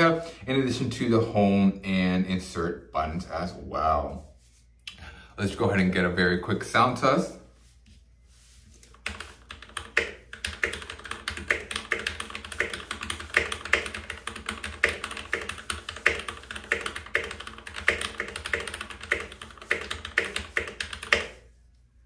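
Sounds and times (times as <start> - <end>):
mechanical keyboard typing: 9.0 - 21.4.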